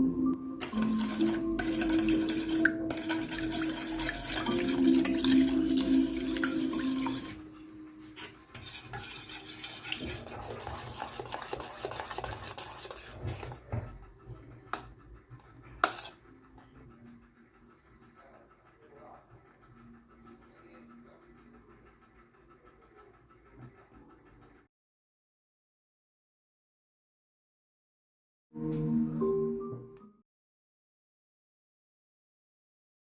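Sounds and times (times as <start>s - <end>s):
background music: 0.0s - 10.5s, 28.6s - 30.2s
utensil scraping in mixing bowl: 0.6s - 14.0s, 14.6s - 16.7s.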